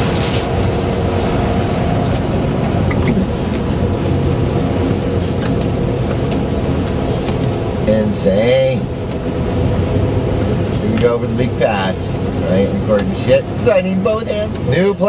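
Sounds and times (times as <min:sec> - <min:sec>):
brief high squeaks: 0:02.9 - 0:03.7, 0:04.8 - 0:05.6, 0:06.7 - 0:07.4, 0:08.7 - 0:09.2, 0:10.4 - 0:11.0, 0:12.2 - 0:12.8.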